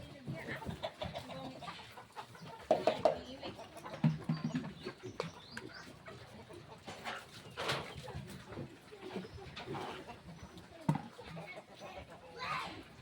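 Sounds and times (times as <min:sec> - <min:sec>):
chickens clucking: 0:00.0 - 0:13.0.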